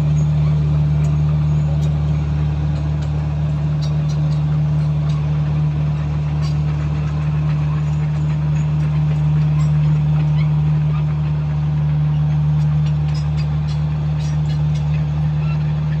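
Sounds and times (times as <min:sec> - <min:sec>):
bulldozer diesel engine droning: 0:00.0 - 0:16.0.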